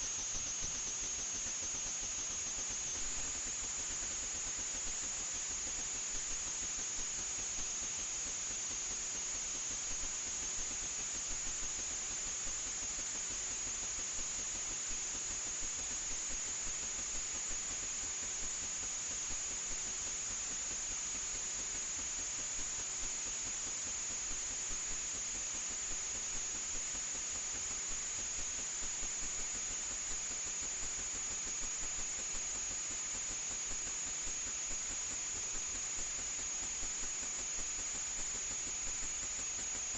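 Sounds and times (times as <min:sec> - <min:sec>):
small irregular ticks: 0:00.0 - 0:39.9
steady hiss: 0:00.0 - 0:39.9.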